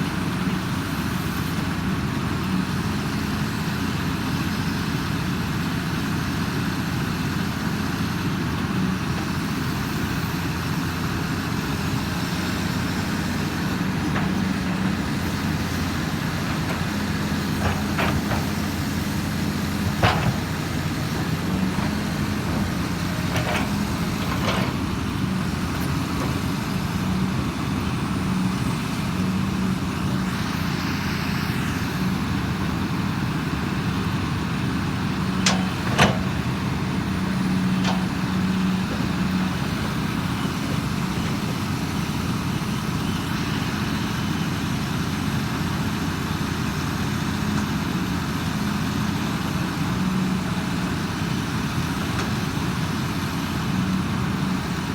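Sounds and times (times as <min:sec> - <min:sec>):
excavator diesel engine running: 0:00.0 - 0:54.9.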